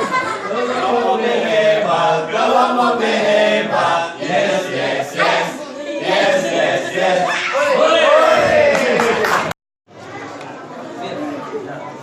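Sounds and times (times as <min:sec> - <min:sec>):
group chanting a cheer: 0:00.5 - 0:09.5.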